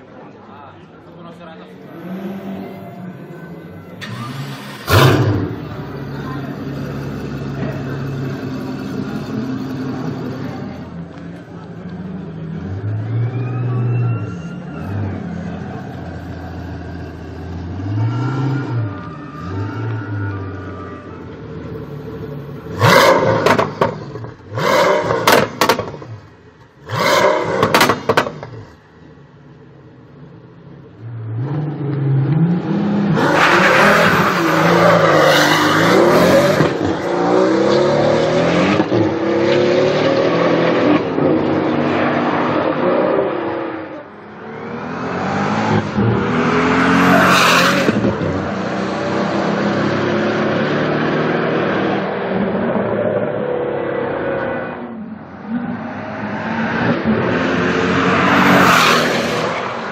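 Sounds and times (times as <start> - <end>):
sports car engine revving: 4.0 - 10.9, 21.6 - 28.8.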